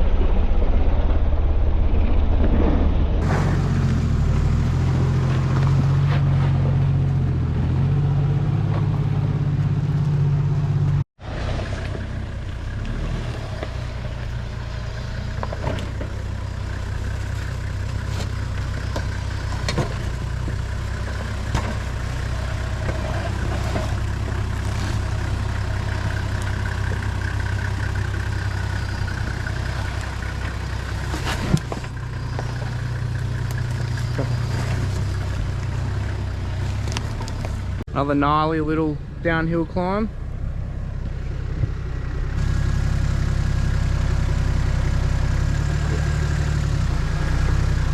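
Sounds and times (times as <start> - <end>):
diesel engine at low revs: 0.0 - 47.9
vehicle knocks and rattles: 15.2 - 37.8.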